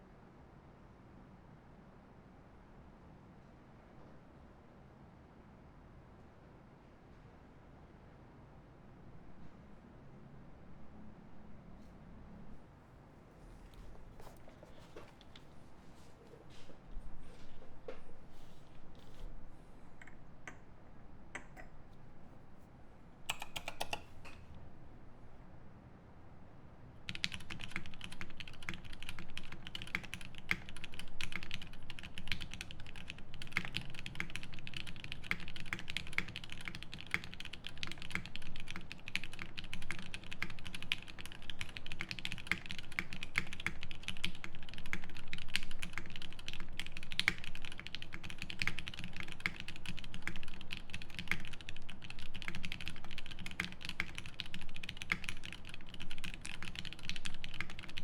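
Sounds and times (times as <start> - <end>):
fast typing on mechanical keyboard: 23.3 - 24.4, 27.1 - 58.0.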